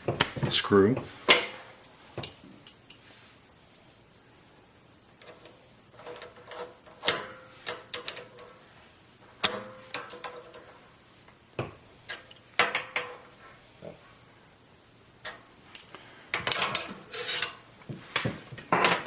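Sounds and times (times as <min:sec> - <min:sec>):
sharp metal clicks and knocks: 0:05.2 - 0:08.5
tools being handled: 0:05.2 - 0:08.6, 0:15.2 - 0:19.0.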